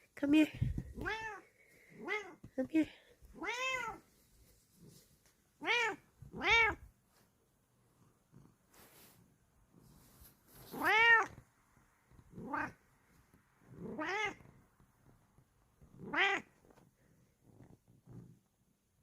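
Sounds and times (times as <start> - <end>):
cat meowing loudly: 3.4 - 4.0, 5.6 - 6.8, 10.7 - 11.4, 12.4 - 12.8, 13.9 - 14.4, 16.1 - 16.5.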